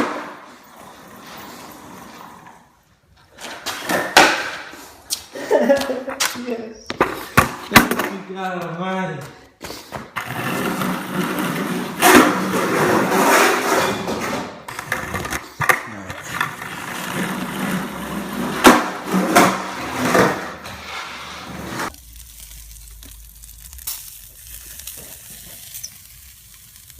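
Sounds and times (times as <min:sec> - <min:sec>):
skateboard snaps and landings: 0:00.0 - 0:00.5, 0:03.4 - 0:05.2, 0:18.6 - 0:20.4
skateboard wheels rolling: 0:00.0 - 0:04.9, 0:09.9 - 0:21.9.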